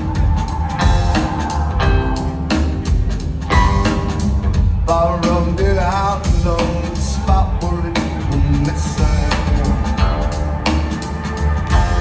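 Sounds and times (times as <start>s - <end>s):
drum kit beat: 0.0s - 12.0s
rock band playing live: 0.0s - 12.0s
strong bass: 0.0s - 12.0s.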